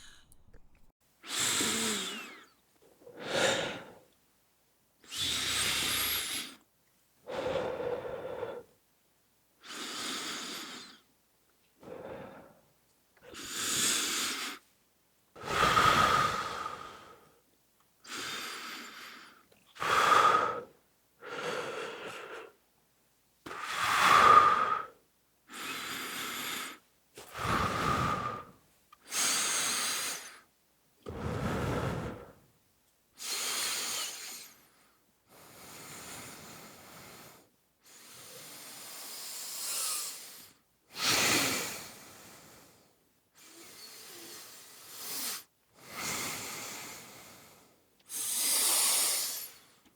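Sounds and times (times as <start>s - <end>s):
person breathing deeply: 0.0s - 0.8s, 7.3s - 8.7s, 11.8s - 12.7s, 15.4s - 17.3s, 27.3s - 28.6s, 31.1s - 32.4s.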